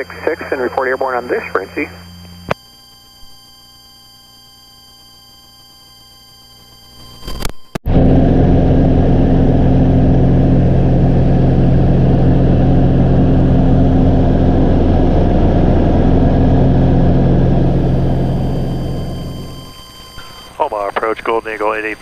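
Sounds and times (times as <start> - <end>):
aircraft cabin engine drone: 0.0 - 3.3, 7.9 - 22.0.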